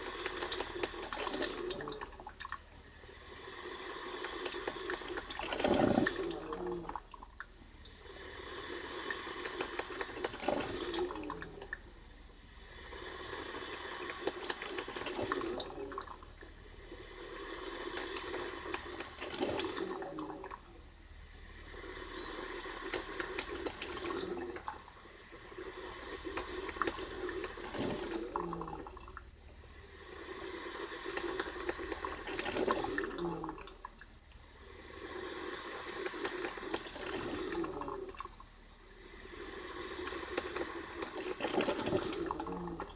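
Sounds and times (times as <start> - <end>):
coffee maker brewing in surges: 0.0 - 42.9.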